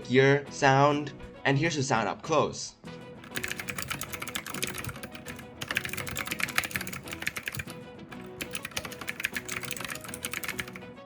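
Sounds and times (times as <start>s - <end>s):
mechanical keyboard typing: 3.2s - 10.8s.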